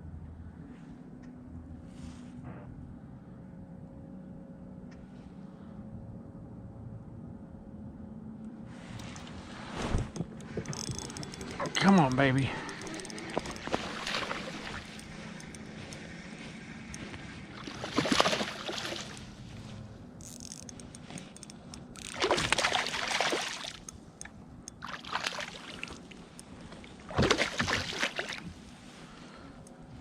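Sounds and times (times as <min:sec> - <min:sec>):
water splashing and sloshing: 0:08.8 - 0:30.0.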